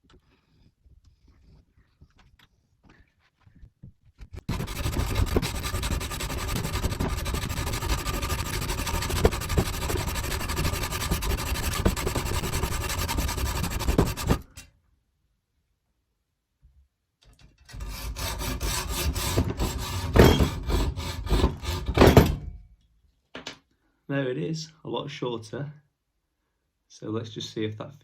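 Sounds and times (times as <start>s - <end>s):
hacksaw cutting metal: 4.5s - 14.6s, 17.7s - 22.4s.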